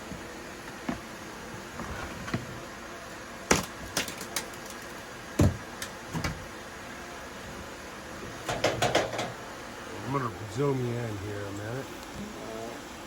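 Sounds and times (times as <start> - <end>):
steady background hiss: 0.0 - 13.0
wood or tools knocking: 8.5 - 9.4.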